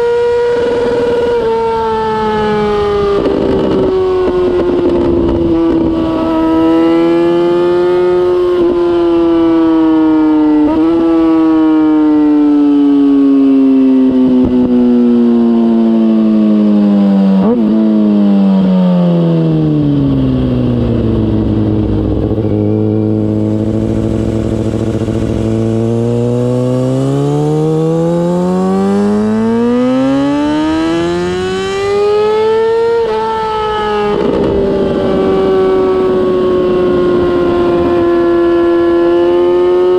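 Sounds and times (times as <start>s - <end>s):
motorcycle engine: 0.0s - 39.9s
exhaust cracks: 20.0s - 28.0s.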